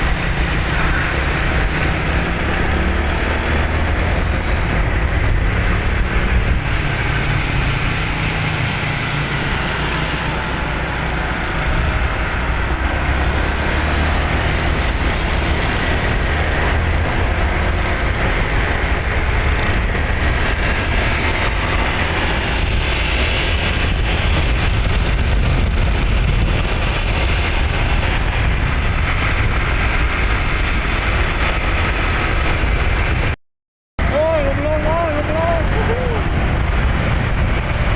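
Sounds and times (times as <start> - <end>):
road and wind noise: 0.0 - 33.4, 34.0 - 37.9
low engine rumble: 34.0 - 37.9.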